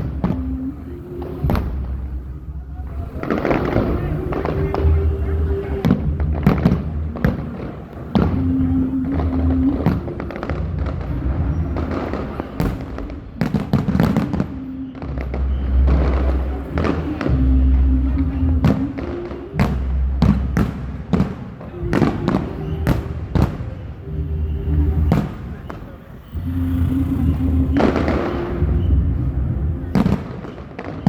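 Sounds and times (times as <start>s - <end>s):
low rumble: 0.0s - 21.1s, 26.4s - 30.1s
fireworks bangs and crackles: 0.0s - 31.0s.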